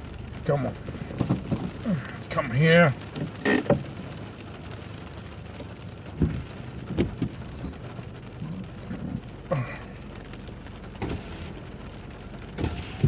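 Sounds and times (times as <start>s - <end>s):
steady rain falling: 0.0s - 13.0s.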